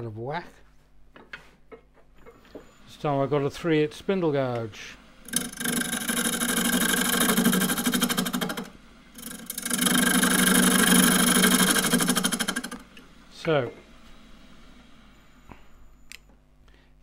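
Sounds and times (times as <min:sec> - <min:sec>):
gouge cutting wood on a lathe: 0:05.2 - 0:12.8.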